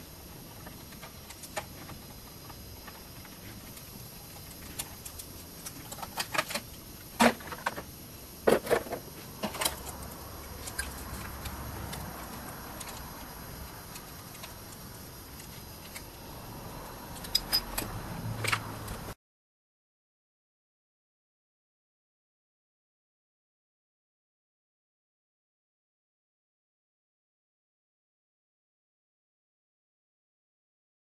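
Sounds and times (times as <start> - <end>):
hand tools clicking and knocking: 8.5 - 16.1, 17.1 - 19.1.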